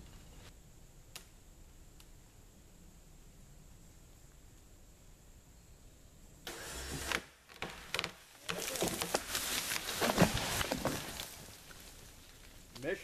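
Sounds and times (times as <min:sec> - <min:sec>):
tree trunk cracking and crashing: 0:07.0 - 0:12.6.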